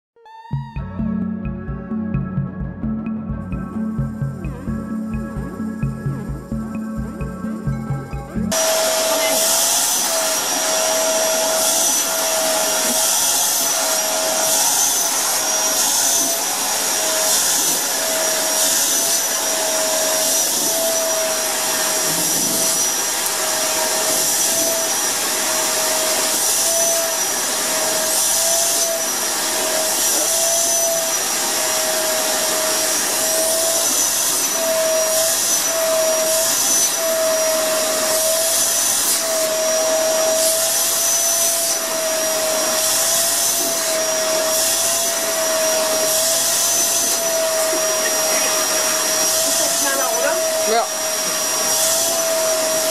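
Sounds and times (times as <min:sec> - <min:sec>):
vacuum cleaner motor whine: 0:03.7 - 0:52.9.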